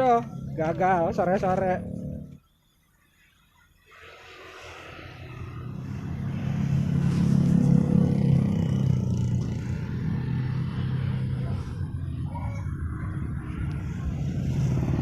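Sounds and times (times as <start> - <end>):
vehicle engine passing by: 3.9 - 15.0.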